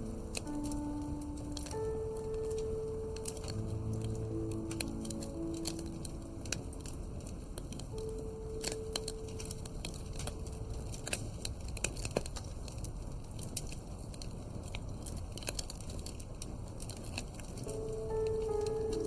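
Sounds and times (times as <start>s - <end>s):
fire popping and snapping: 0.0s - 19.0s
wood fire crackling: 0.0s - 19.0s.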